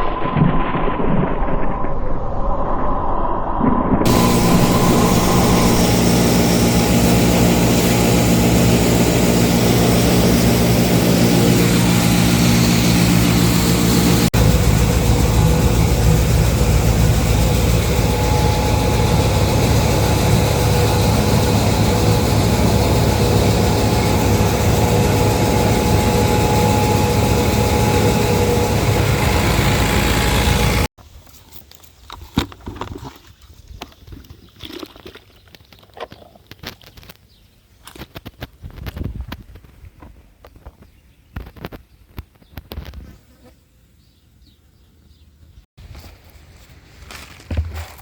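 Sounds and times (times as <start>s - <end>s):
grain crusher grinding: 4.1s - 30.9s.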